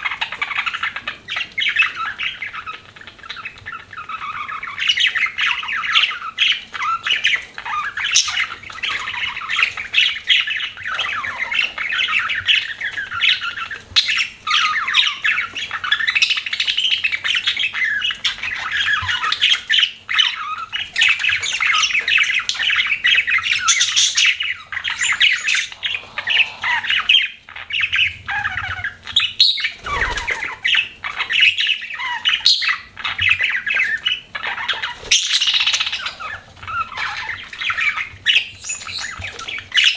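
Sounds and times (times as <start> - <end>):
budgerigars chattering and chirping: 0.0 - 39.9.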